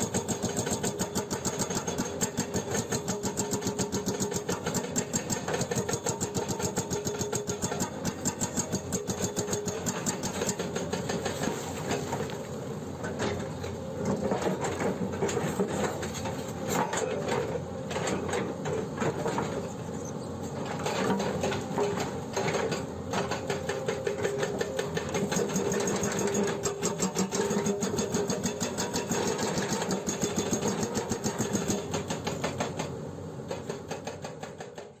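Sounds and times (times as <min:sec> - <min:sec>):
hydraulic breaker hammering rock: 0:00.0 - 0:12.3, 0:20.6 - 0:35.0
excavator engine: 0:00.0 - 0:35.0.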